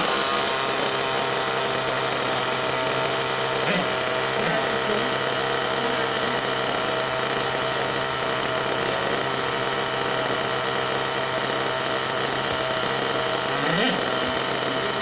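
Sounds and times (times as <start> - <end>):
small model engine running: 0.0 - 15.0.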